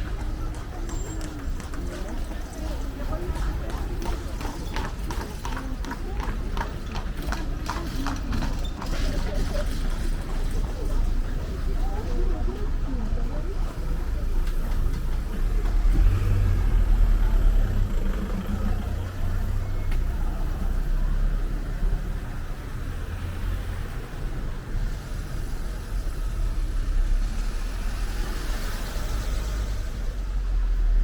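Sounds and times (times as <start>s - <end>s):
traffic rumble: 0.0s - 31.0s
car passing: 15.0s - 31.0s.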